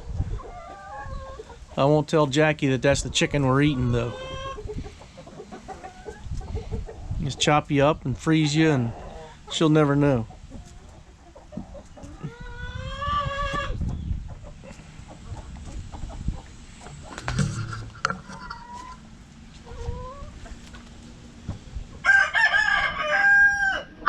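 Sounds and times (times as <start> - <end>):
chickens clucking: 0.0 - 24.0
rooster crowing: 22.0 - 24.0.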